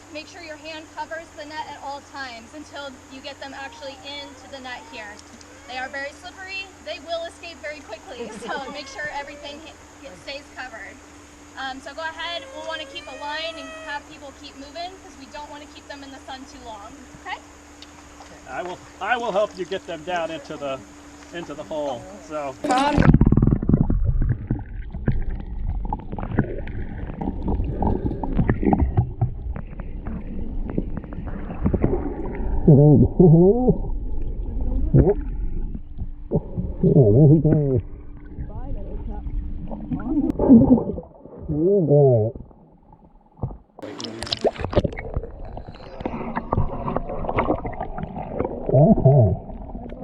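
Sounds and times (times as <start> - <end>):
muffled water sloshing and gurgling: 22.6 - 50.0.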